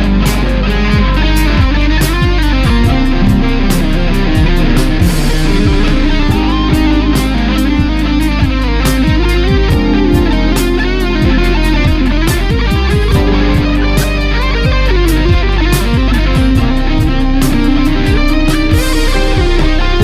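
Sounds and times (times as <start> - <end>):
drums and bass beat: 0.0 - 20.0
electric guitar: 0.0 - 20.0.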